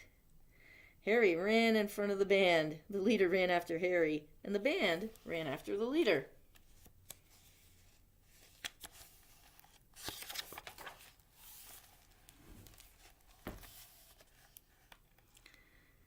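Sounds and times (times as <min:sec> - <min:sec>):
book pages rustling: 0:06.5 - 0:15.4.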